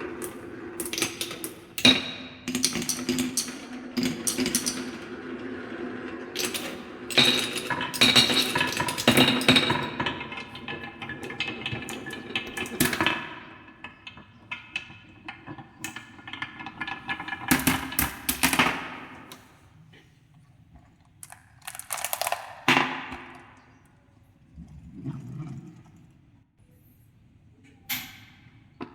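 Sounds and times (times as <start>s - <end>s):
marbles clattering down wooden run: 21.2s - 22.9s.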